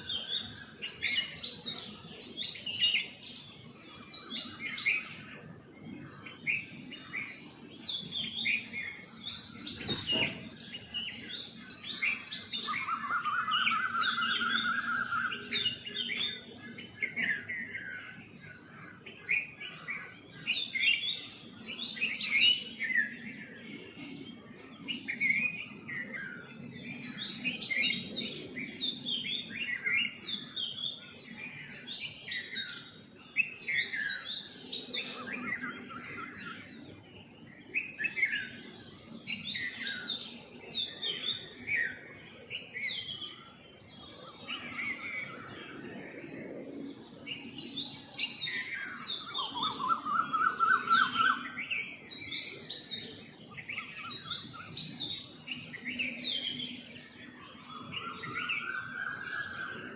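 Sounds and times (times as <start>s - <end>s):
bird trill: 0.0s - 23.3s, 46.9s - 59.9s
small birds chirping: 0.0s - 59.9s.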